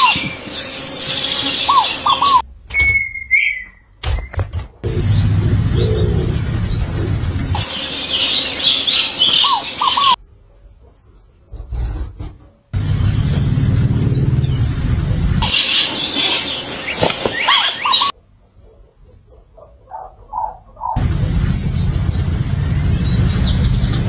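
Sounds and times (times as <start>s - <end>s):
birds chirping: 0.0s - 10.2s, 12.8s - 18.8s, 19.4s - 24.0s
whistled note: 2.7s - 7.7s, 21.4s - 24.0s.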